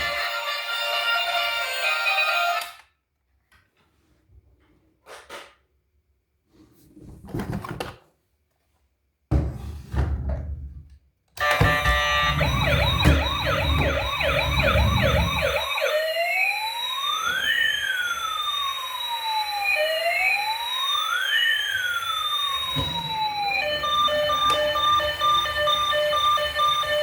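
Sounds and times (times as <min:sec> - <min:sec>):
steady beeping tune: 0:11.4 - 0:15.9
electronic siren warbling: 0:11.4 - 0:27.0.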